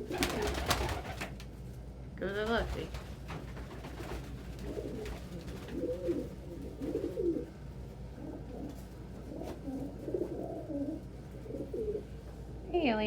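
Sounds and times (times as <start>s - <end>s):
pigeons cooing: 0.0s - 1.3s, 3.7s - 12.2s
steady low hum: 0.0s - 13.0s.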